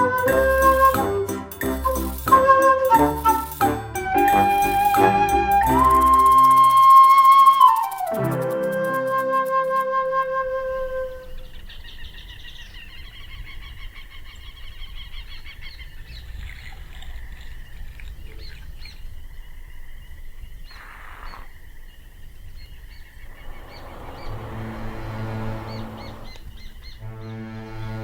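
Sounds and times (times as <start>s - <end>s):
sustained musical tones: 0.0s - 11.3s, 23.3s - 28.0s
birds chirping and singing: 11.2s - 27.4s
rushing whoosh: 23.2s - 26.9s
low outdoor rumble: 23.2s - 27.1s.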